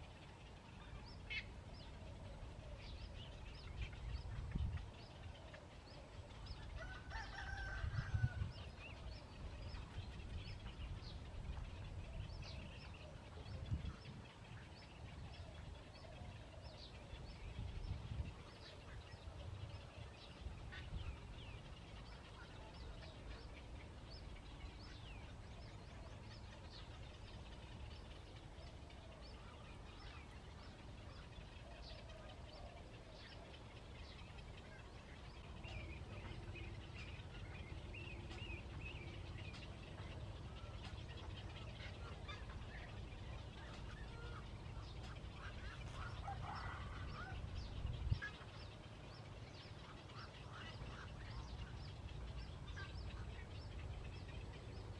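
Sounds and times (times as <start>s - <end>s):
birds chirping: 0.0s - 54.9s.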